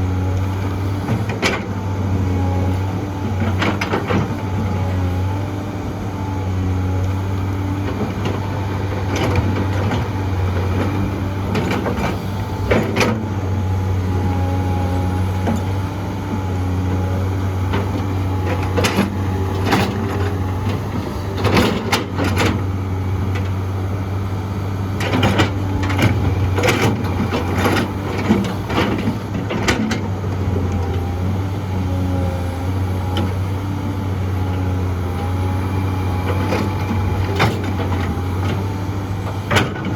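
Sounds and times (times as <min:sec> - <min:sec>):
excavator diesel engine running: 0:00.0 - 0:39.9
knocks and clanks of digging: 0:07.9 - 0:13.7, 0:17.6 - 0:23.6, 0:24.9 - 0:32.0, 0:36.1 - 0:39.9.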